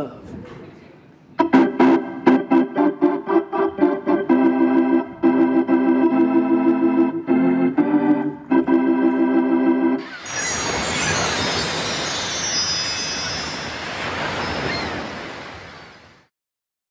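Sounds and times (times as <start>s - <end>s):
organ playing chords: 1.4s - 14.6s.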